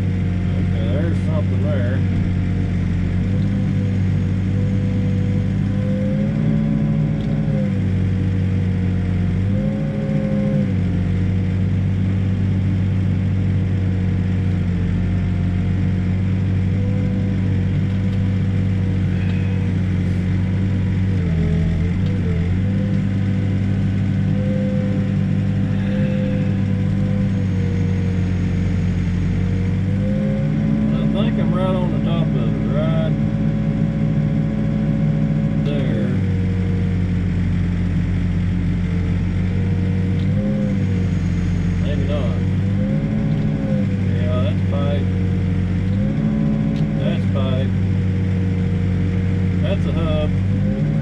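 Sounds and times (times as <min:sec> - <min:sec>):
backhoe diesel engine running: 0:00.0 - 0:51.0.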